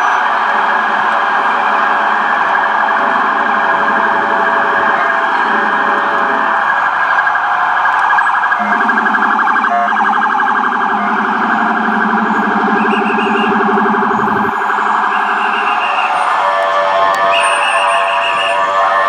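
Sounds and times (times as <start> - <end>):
ambulance siren yelping: 0.0 - 19.0
deep low-pitched siren tone: 7.8 - 19.0.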